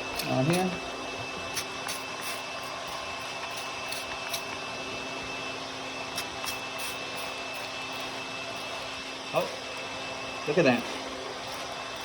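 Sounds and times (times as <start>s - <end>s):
air inflator whining: 0.0s - 12.0s
spray bottle hisses: 1.5s - 4.5s, 6.2s - 8.9s.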